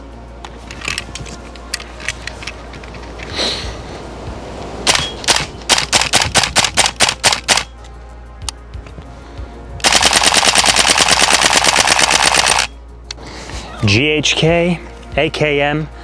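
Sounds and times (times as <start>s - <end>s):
airsoft rifle shots cracking: 4.8s - 7.8s, 9.8s - 12.7s.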